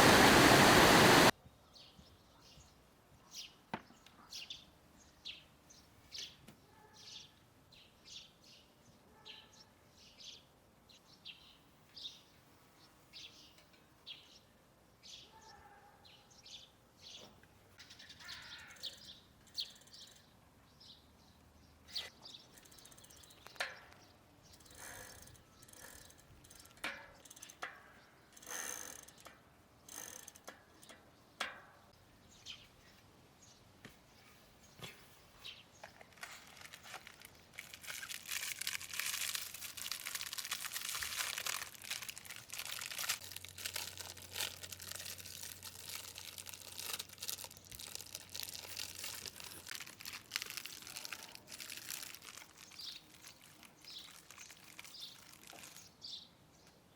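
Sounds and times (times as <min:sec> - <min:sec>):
birds chirping faintly: 0:30.7 - 0:56.9.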